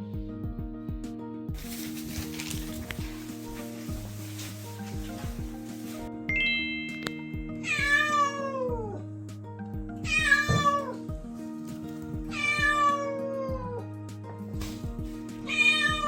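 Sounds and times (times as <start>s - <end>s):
cat meowing: 7.6s - 9.0s, 10.0s - 11.0s, 12.3s - 13.8s, 15.4s - 16.0s.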